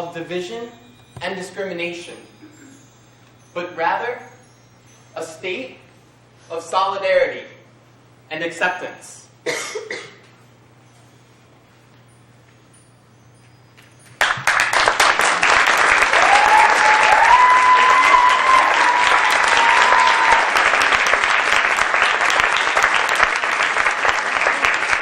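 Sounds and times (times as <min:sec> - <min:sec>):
low room hum: 0:00.0 - 0:25.0
audience applause: 0:14.2 - 0:25.0
person cheering: 0:16.1 - 0:20.7.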